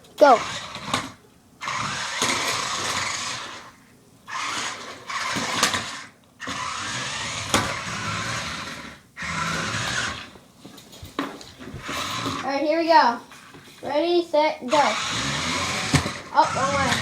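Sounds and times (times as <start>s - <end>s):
toy car motor whirring: 0.2s - 10.3s, 11.8s - 12.6s, 14.6s - 17.0s.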